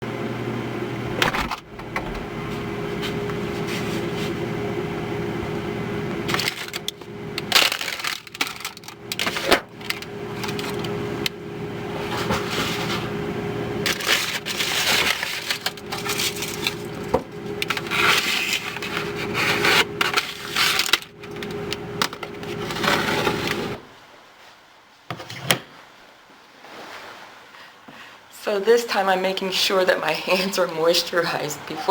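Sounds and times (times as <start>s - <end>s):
steady low hum: 0.0s - 24.0s
crisp food crunching: 6.3s - 11.0s, 13.8s - 23.6s.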